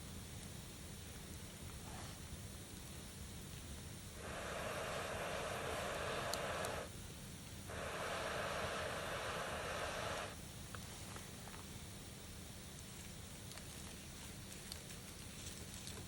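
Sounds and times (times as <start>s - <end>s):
person blowing on fire: 4.2s - 6.9s, 7.7s - 10.4s.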